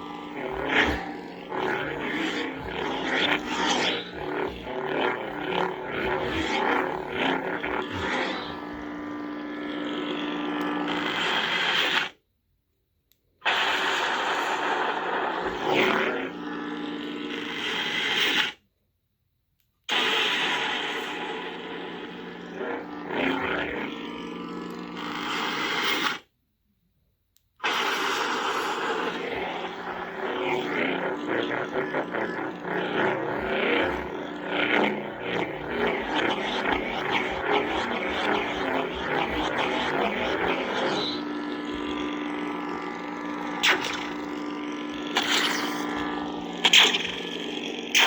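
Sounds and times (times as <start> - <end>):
lightsaber humming and clashing: 0.0 - 12.1, 13.8 - 18.4, 20.5 - 25.9, 27.9 - 48.0
lightsaber igniting: 0.0 - 12.2, 27.7 - 48.0.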